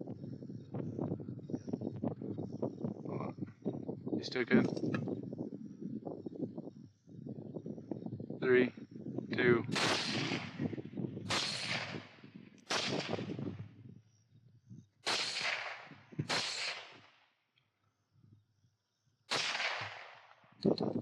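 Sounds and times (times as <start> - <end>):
rifle shots: 9.7 - 13.6, 15.0 - 17.2, 19.3 - 20.4.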